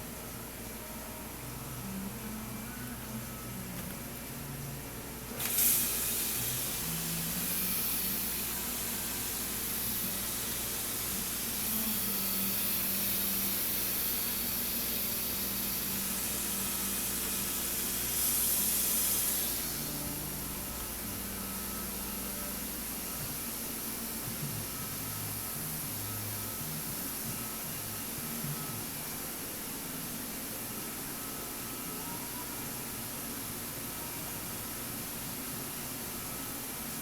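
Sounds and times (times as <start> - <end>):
low machine hum: 0.0 - 37.0
hissing spray: 5.4 - 20.3.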